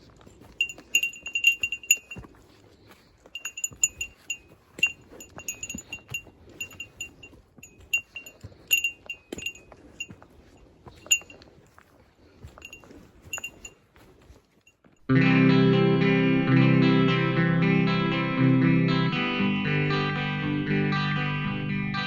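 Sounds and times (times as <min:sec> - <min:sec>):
small metal bell jingling: 0:00.4 - 0:02.3, 0:03.3 - 0:10.2, 0:11.0 - 0:11.4, 0:12.6 - 0:13.8.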